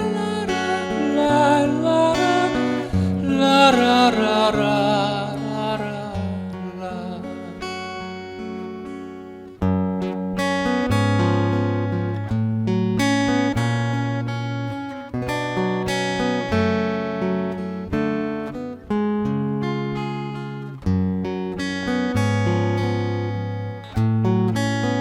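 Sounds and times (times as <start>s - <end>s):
acoustic guitar strumming chords: 0.0s - 25.0s.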